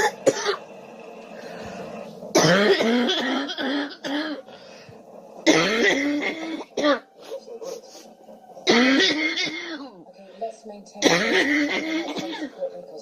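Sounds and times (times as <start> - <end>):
girl coughing: 0.0 - 0.6, 2.4 - 4.4, 5.4 - 7.1, 8.7 - 9.9, 11.0 - 12.6.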